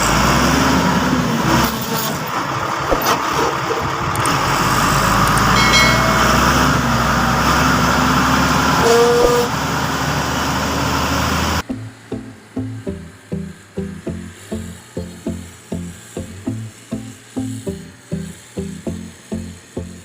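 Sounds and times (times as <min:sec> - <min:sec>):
diesel engine of heavy machinery: 0:00.0 - 0:20.0
music with plucked rhythmic beat: 0:11.7 - 0:20.0.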